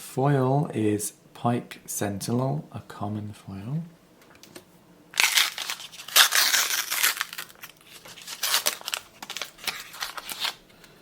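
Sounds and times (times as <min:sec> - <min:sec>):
wrapper being torn and crinkled: 0:05.2 - 0:10.6.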